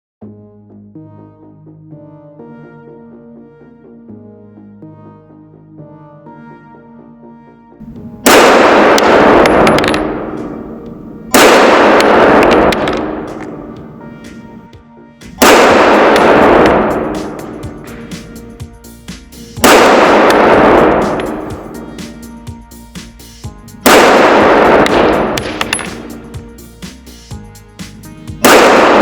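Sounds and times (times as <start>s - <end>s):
faint background music: 0.2s - 29.0s
pistol shots with ringing tail: 8.2s - 14.7s, 15.4s - 18.4s, 19.6s - 21.8s, 23.8s - 26.3s, 28.4s - 29.0s.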